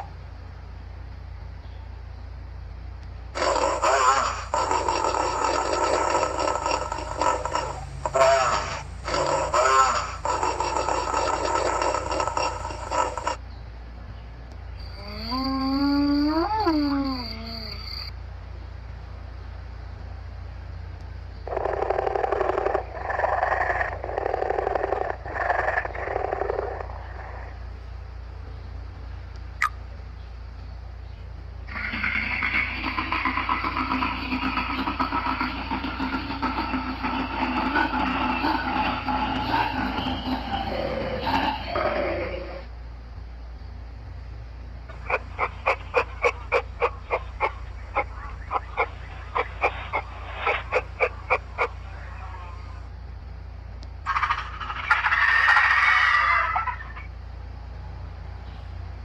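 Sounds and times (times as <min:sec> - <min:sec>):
animal calling: 0:03.4 - 0:13.4, 0:14.8 - 0:18.1, 0:21.4 - 0:27.8, 0:31.7 - 0:42.8, 0:44.9 - 0:52.9, 0:54.1 - 0:57.2.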